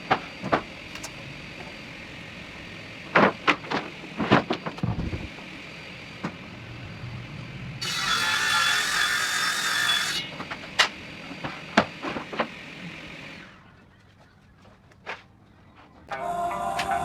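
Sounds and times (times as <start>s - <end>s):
power tool whining: 4.6s - 13.7s, 16.1s - 17.0s.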